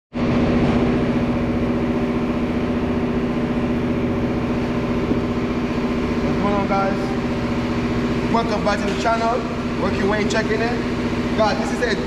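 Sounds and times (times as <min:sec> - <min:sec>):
engine idling: 0:00.3 - 0:12.0.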